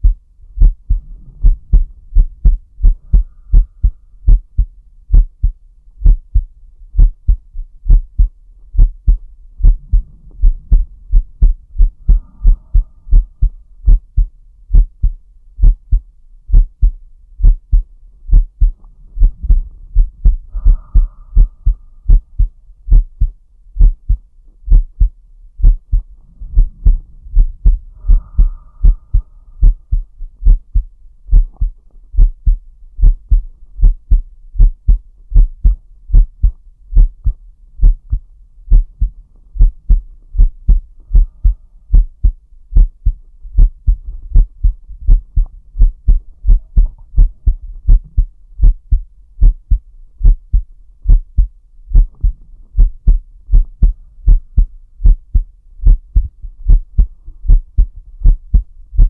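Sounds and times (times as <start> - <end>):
slow deep breaths: 0.0 - 4.7, 9.1 - 14.3, 18.3 - 22.5, 25.9 - 30.6, 40.7 - 42.3
heartbeat thumps: 0.0 - 59.0.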